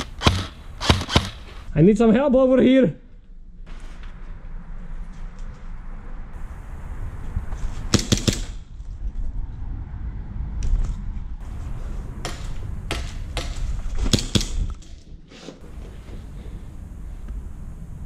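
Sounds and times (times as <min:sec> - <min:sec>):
airsoft gun shots: 0:00.0 - 0:01.4, 0:07.9 - 0:08.6, 0:12.2 - 0:14.6
low rumble: 0:08.6 - 0:14.8.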